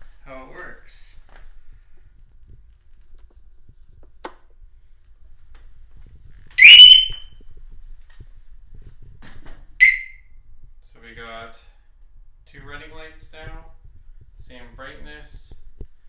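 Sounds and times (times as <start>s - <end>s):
switch click: 4.0s - 4.5s
electronic alarm chirps: 6.6s - 7.2s, 9.8s - 10.2s.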